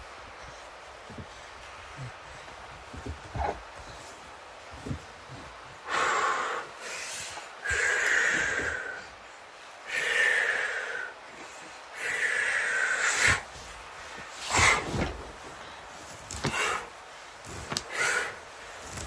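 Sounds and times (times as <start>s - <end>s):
person breathing deeply: 5.8s - 19.0s.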